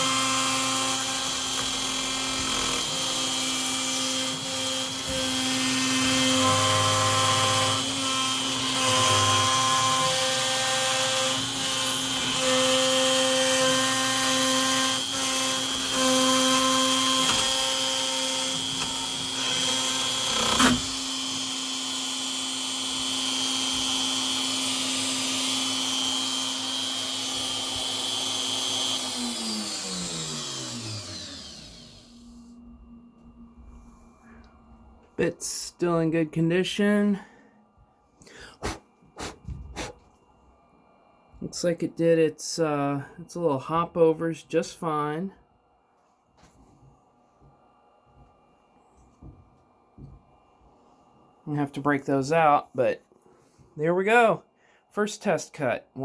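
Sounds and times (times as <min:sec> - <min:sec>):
stepper motor tones: 0:00.0 - 0:32.9
router spindle whine: 0:00.0 - 0:33.8.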